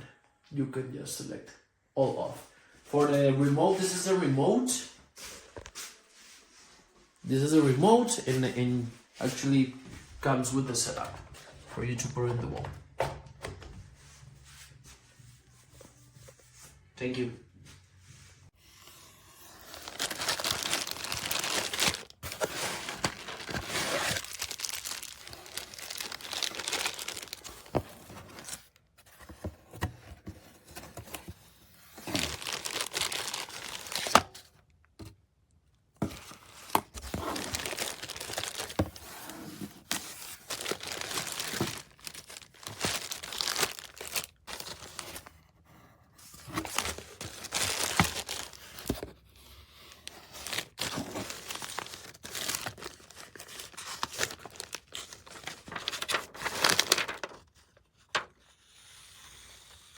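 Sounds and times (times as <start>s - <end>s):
crinkling and rustling: 19.6s - 58.4s.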